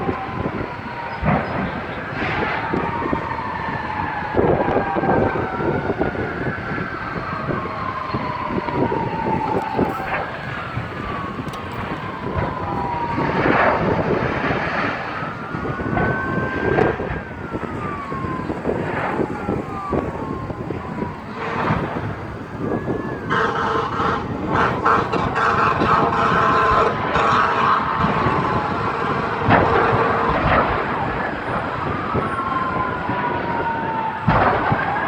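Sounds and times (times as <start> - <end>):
emergency vehicle sirens wailing: 0.0 - 35.0
steady rumbling noise: 0.0 - 35.0
multi-tone horn: 23.1 - 31.1.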